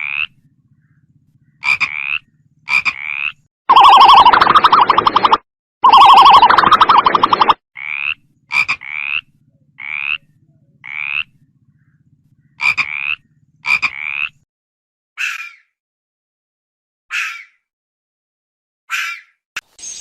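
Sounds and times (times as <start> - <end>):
frogs croaking: 0.0 - 0.5, 1.5 - 4.9, 5.8 - 14.4
frog pulsed trill: 3.7 - 7.6.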